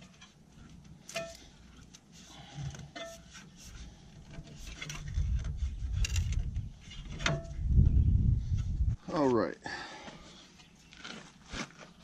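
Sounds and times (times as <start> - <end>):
metal scraping and rubbing: 0.0 - 7.8
low rumbling handling noise: 3.9 - 9.0.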